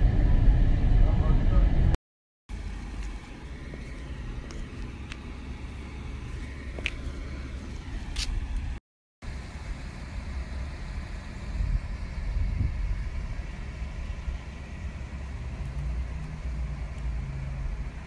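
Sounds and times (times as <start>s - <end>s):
car engine and road rumble: 0.0s - 18.0s.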